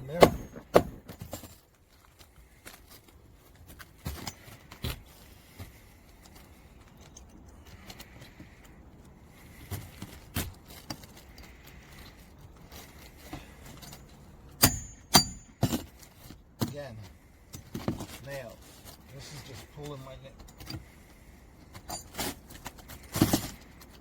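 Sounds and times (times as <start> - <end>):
hammer tapping metal tool: 14.6 - 15.8.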